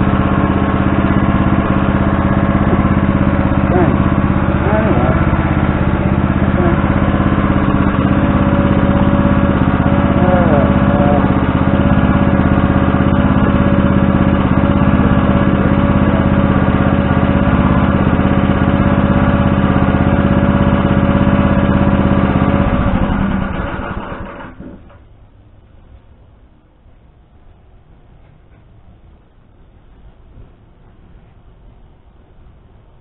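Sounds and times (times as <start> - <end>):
engine idling: 0.0 - 25.1.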